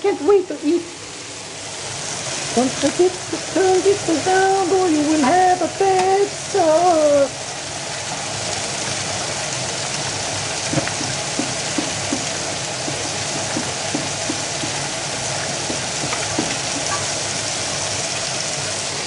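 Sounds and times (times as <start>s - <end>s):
meatballs sizzling in frying pan: 0.0s - 19.0s
utensil tapping against pan: 10.7s - 17.2s.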